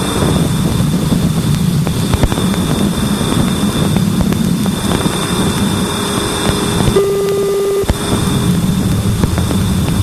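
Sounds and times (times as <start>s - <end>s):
static hiss: 0.1s - 10.0s
steady tone: 5.8s - 10.0s.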